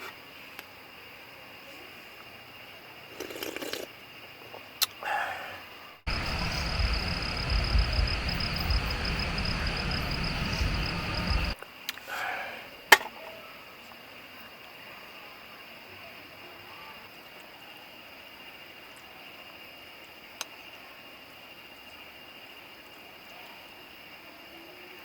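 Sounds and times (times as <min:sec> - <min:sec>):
outdoor ambience: 0:00.0 - 0:23.8
insect trilling: 0:06.1 - 0:11.6
loud rushing noise: 0:06.1 - 0:11.6.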